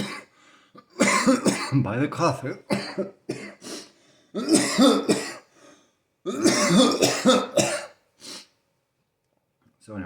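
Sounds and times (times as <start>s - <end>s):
man coughing: 0.0s - 1.9s, 2.5s - 5.5s, 6.3s - 8.0s.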